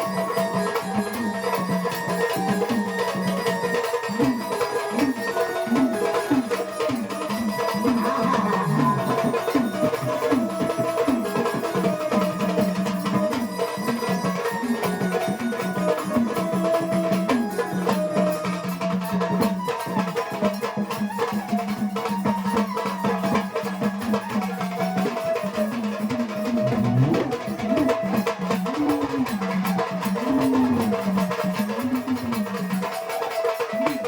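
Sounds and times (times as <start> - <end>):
hand drum percussion: 0.0 - 34.0
person singing: 7.6 - 11.0.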